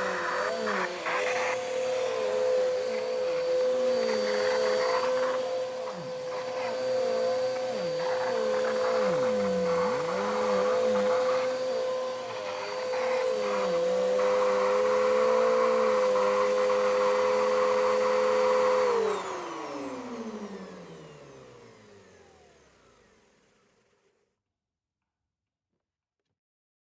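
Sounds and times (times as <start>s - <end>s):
vacuum cleaner motor whine: 0.0s - 24.1s.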